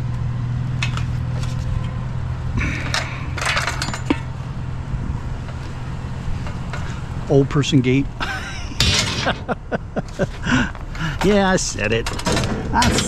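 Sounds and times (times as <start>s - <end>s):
low engine hum: 0.0s - 13.0s
hard objects clinking and rattling: 2.6s - 4.3s.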